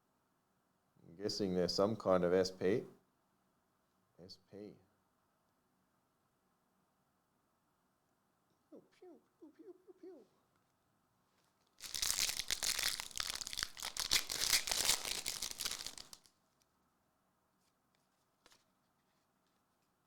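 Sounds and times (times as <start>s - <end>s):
foil wrapper tearing and crinkling: 11.8s - 16.4s.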